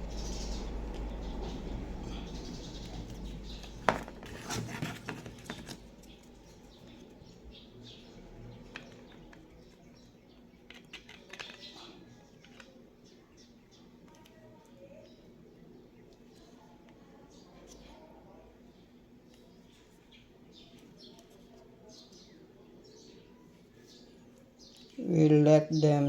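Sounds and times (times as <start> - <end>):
plastic parts clicking: 10.6 - 12.8.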